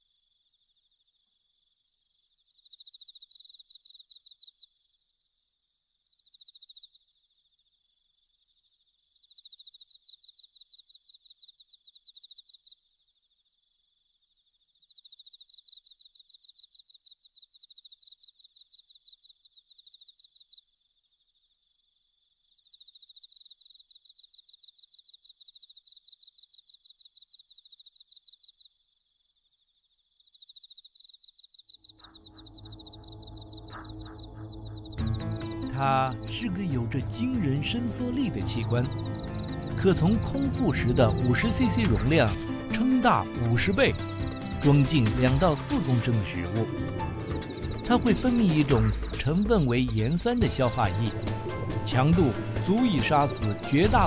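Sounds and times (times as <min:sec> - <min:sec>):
insects chirping in trills: 0:00.0 - 0:54.0.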